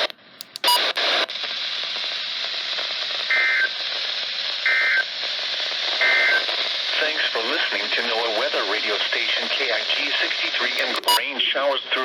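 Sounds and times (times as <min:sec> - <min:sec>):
radio static hiss: 0:00.0 - 0:12.0
data bursts: 0:10.8 - 0:11.2.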